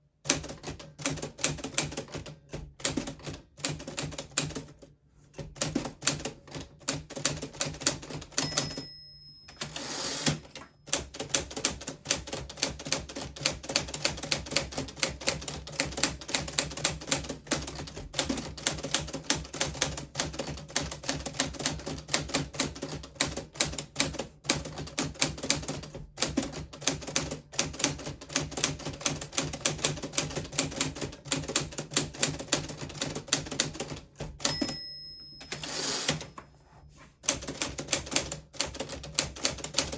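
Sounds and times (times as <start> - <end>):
manual typewriter typing: 0.2 - 36.4, 37.2 - 39.9.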